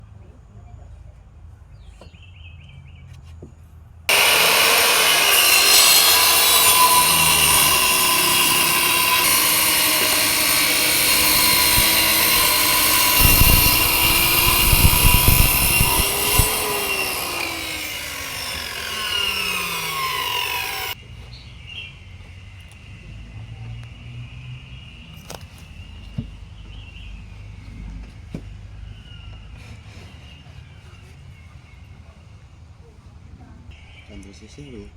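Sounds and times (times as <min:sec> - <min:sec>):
power saw cutting wood: 0:04.1 - 0:21.0.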